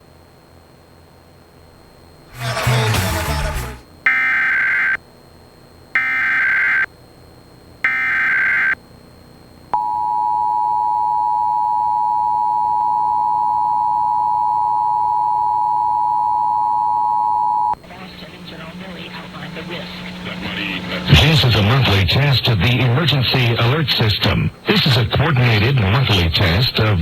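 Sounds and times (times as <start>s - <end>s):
brief noisy sound: 2.3s - 3.8s
modem-like data tone bursts: 9.8s - 24.1s.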